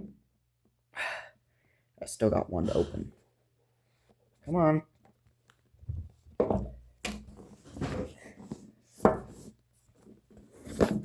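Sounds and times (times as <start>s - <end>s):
cardboard box knocks and scrapes: 7.5s - 9.6s, 10.4s - 11.0s.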